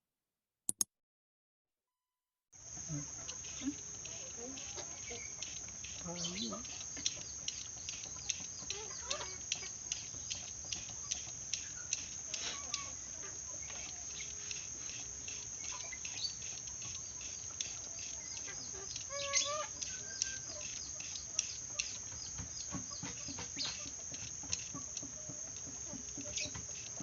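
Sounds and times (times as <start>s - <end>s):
bird chirps and clicks: 0.7s - 0.9s, 3.2s - 27.0s
steady high hiss: 2.6s - 27.0s
pitched bird call: 18.6s - 20.8s.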